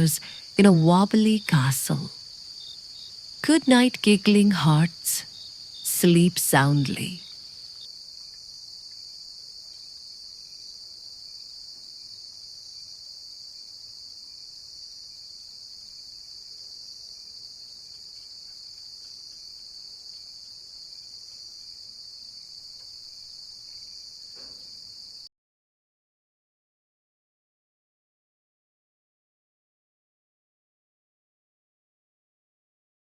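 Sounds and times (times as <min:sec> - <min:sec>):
crickets trilling: 0:00.0 - 0:25.3.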